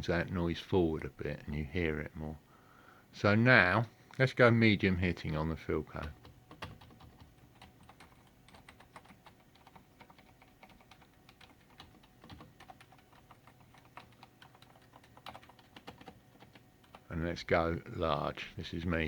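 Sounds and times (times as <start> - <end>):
typing on mechanical keyboard: 6.0 - 17.0.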